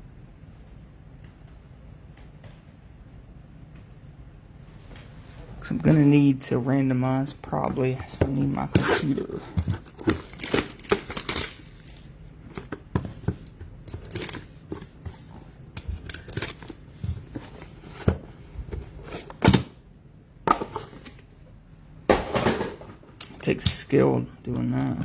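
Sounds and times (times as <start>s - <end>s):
wrappers crinkling and tearing: 8.7s - 12.2s.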